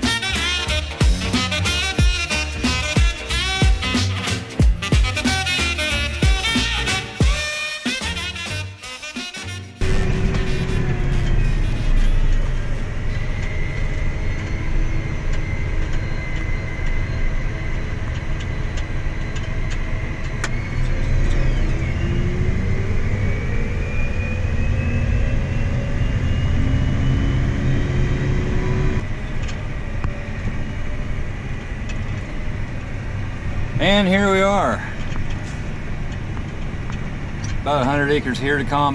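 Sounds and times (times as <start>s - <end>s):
vehicle engine speeding up: 9.8s - 33.8s.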